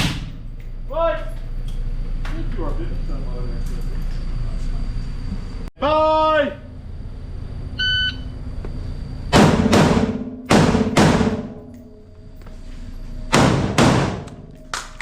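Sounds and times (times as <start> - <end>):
rifle gunshots: 9.3 - 11.6, 13.3 - 14.3.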